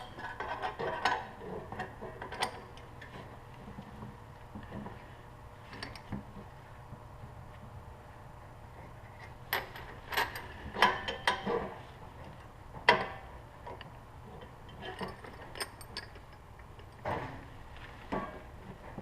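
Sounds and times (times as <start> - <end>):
metal parts clinking: 14.7 - 17.1.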